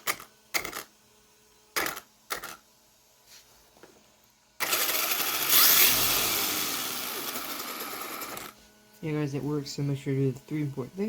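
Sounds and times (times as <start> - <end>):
electric motor and gears whirring: 0.0 - 11.0
motor whine rising in pitch: 4.6 - 9.4.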